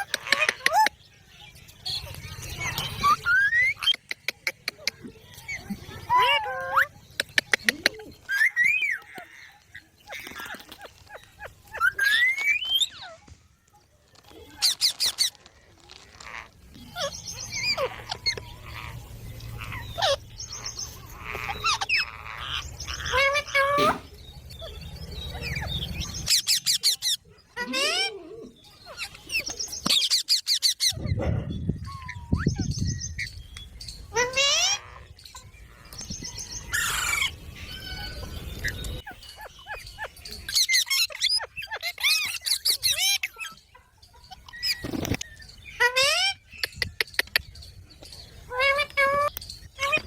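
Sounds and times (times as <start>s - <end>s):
parrot chirping and squawking: 0.0s - 1.0s, 16.1s - 28.1s, 34.1s - 35.8s, 36.7s - 47.4s, 48.5s - 50.0s.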